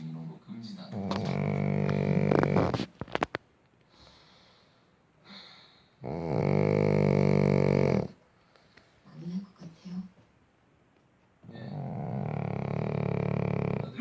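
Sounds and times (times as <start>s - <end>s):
dog snoring: 0.8s - 3.4s, 6.0s - 8.2s, 11.4s - 14.0s.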